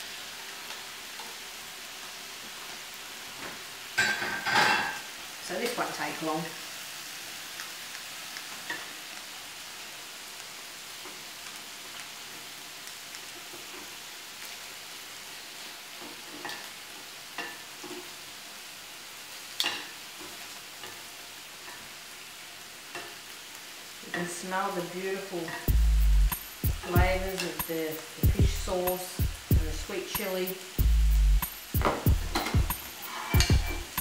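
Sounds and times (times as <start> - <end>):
calamari sizzling on a grill: 0.0 - 34.0.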